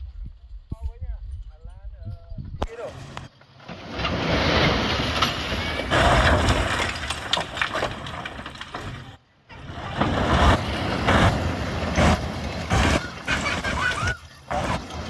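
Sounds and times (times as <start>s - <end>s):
machine and dirt clatter: 2.6s - 15.0s
bulldozer diesel engine under load: 7.9s - 15.0s.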